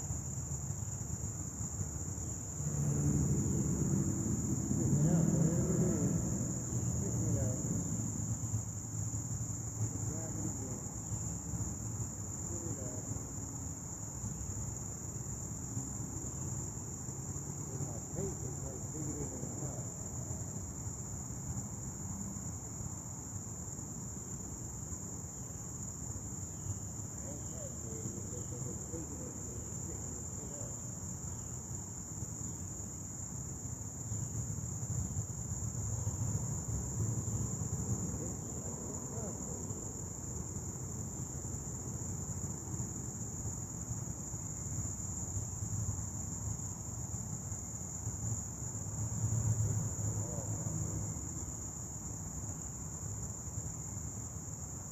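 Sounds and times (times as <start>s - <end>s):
crickets trilling: 0.0s - 54.9s.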